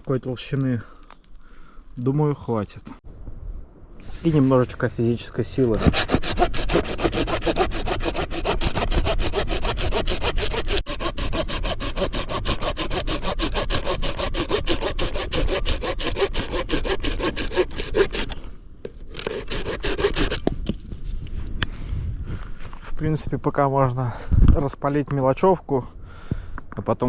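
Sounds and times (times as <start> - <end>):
hand saw cutting a branch: 5.5 - 20.6.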